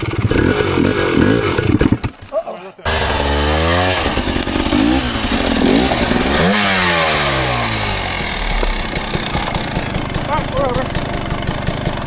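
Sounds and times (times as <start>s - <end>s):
dirt bike engine revving: 0.0s - 2.0s, 2.9s - 12.0s
clattering clicks: 8.1s - 12.0s.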